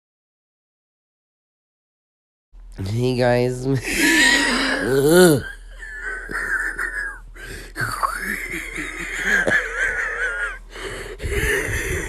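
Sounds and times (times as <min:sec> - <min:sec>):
person's high-pitched wheezing laugh: 0:03.9 - 0:12.0.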